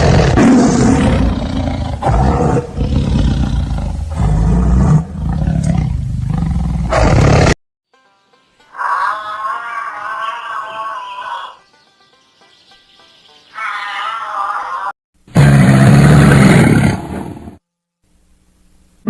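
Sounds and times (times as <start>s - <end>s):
large animal roaring: 0.0s - 7.6s.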